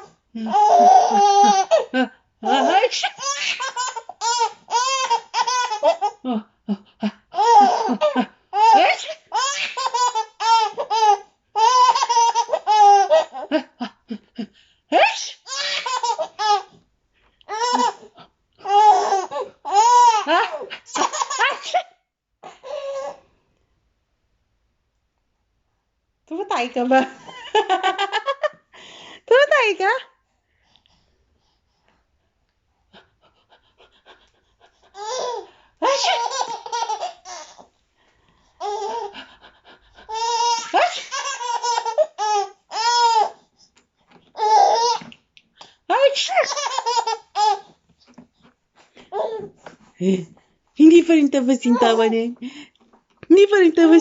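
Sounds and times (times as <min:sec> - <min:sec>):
baby laughing: 0:00.4 - 0:06.2, 0:07.3 - 0:14.3, 0:15.0 - 0:16.7, 0:17.5 - 0:21.9, 0:34.8 - 0:37.7, 0:38.6 - 0:39.2, 0:40.1 - 0:43.4, 0:44.3 - 0:45.2, 0:46.2 - 0:47.7.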